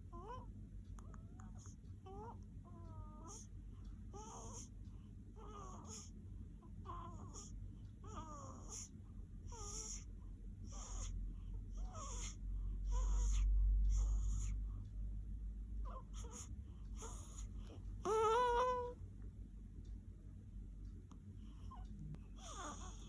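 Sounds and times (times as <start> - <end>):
baby snoring with wheezy whistle: 11.9 - 14.6, 22.4 - 23.0.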